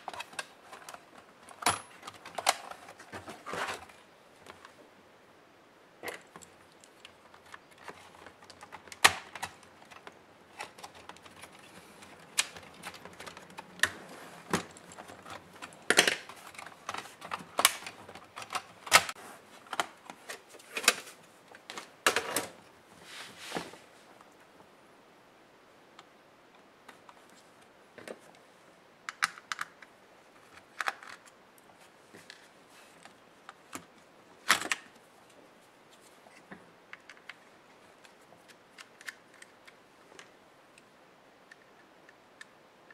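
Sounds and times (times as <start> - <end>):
small tools being handled: 6.0 - 22.5.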